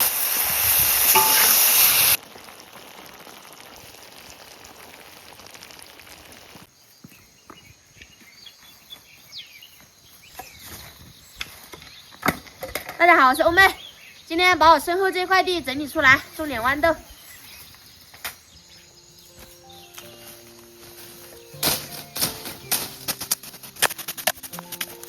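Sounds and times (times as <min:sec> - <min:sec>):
food sizzling in a pan: 0:00.0 - 0:06.7
faint steady hiss: 0:00.0 - 0:07.2
short high chirp: 0:01.1 - 0:02.2.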